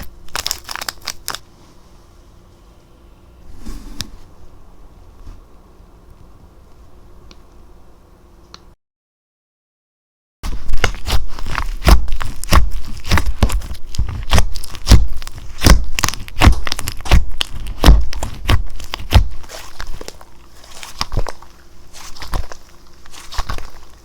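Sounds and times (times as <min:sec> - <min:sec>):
slime clicking and popping: 0:10.8 - 0:20.2.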